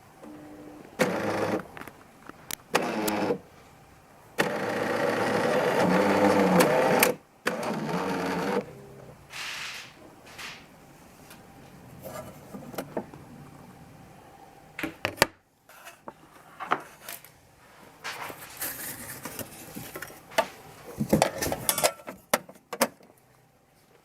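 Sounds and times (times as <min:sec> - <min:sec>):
coffee machine humming: 0:00.0 - 0:09.3
cups and crockery clinking: 0:21.1 - 0:22.4.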